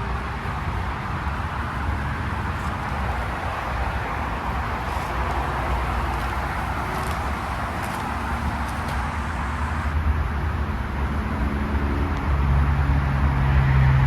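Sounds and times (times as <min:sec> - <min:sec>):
air conditioner fan rushing: 0:01.4 - 0:10.0.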